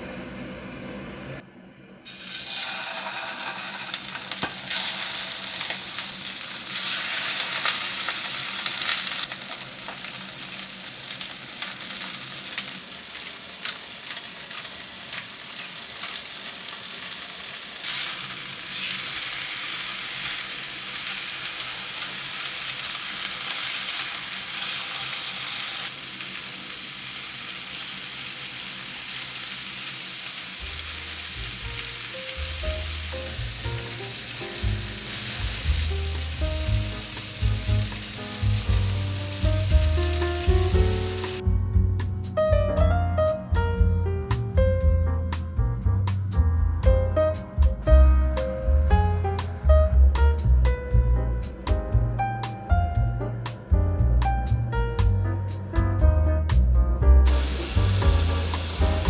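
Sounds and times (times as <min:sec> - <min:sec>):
steak sizzling in a hot pan: 0:02.1 - 0:41.4, 0:57.3 - 0:59.0.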